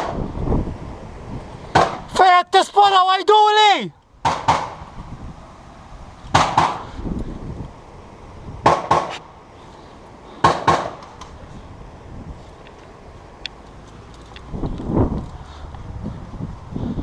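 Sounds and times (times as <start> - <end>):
airsoft guns firing: 4.2 - 4.8, 6.3 - 6.8, 8.6 - 9.2, 10.4 - 11.3.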